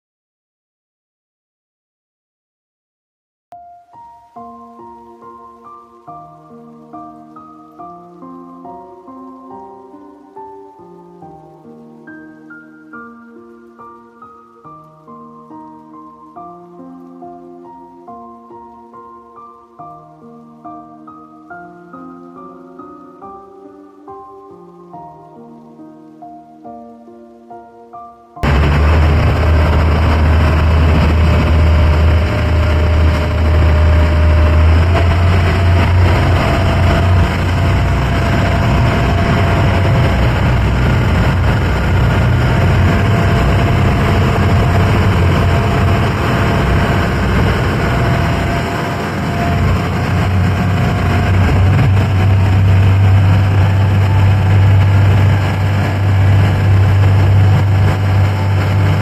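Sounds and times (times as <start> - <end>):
boat engine droning: 28.4 - 59.0.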